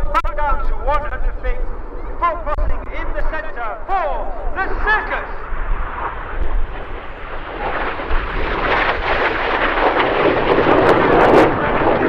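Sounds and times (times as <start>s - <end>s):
jets passing low: 0.0s - 12.0s.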